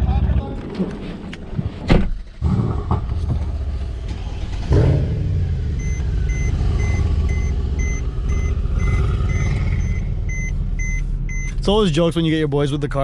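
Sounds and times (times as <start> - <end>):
sharp thump: 1.7 - 3.5
car engine idling: 2.7 - 13.0
parking sensor beeps: 5.7 - 11.6.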